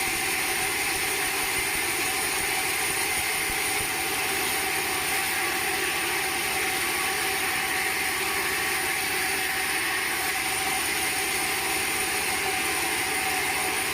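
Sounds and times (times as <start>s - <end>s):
sawmill machinery running: 0.0s - 13.9s.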